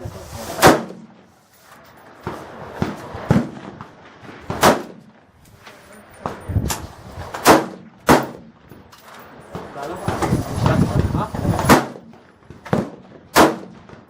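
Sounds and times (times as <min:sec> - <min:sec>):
gunshots with echo: 0:00.6 - 0:01.2, 0:02.2 - 0:05.4, 0:07.3 - 0:08.6, 0:10.0 - 0:14.0.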